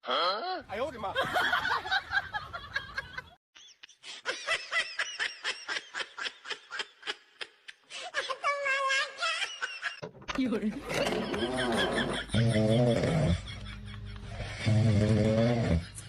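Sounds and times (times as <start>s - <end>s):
snickering laughter: 10.9s - 14.8s.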